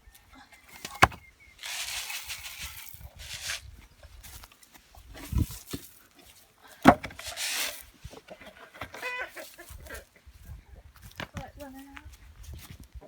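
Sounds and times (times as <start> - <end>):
brief rustle: 0.8 - 3.7, 7.1 - 9.1
chickens clucking: 7.2 - 10.6.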